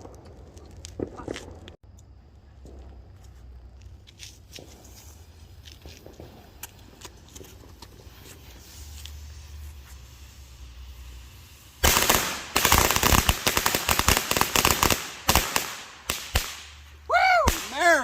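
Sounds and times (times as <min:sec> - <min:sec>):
firecrackers going off: 0:02.6 - 0:18.0
person shouting: 0:17.1 - 0:18.0.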